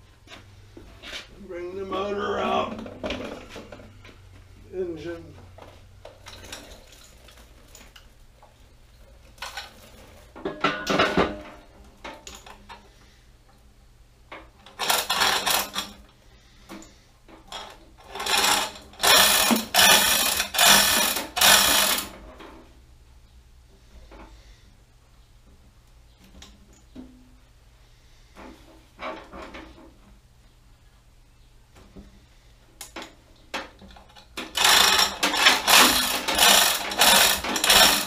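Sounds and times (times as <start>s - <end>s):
metal tools clattering and scraping: 9.4s - 12.9s, 33.0s - 38.0s.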